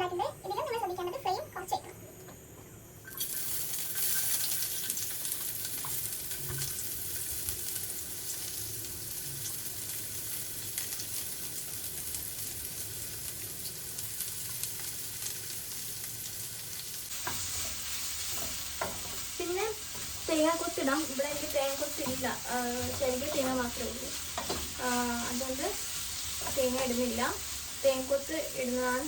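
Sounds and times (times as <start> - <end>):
oil sizzling in a pan: 3.1 - 29.0
stirring clicks: 17.2 - 27.8.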